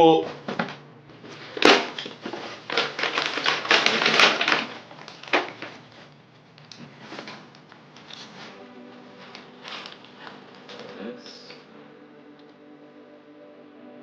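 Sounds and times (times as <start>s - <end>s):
packaging rustling and crinkling: 0.3s - 8.6s, 9.2s - 11.6s.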